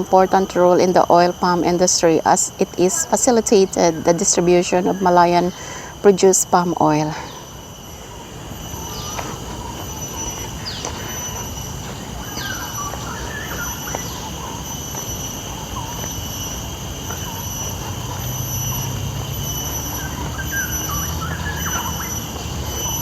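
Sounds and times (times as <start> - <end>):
steady high whine: 0.0 - 23.0
bird chirps: 7.2 - 16.6, 17.2 - 23.0.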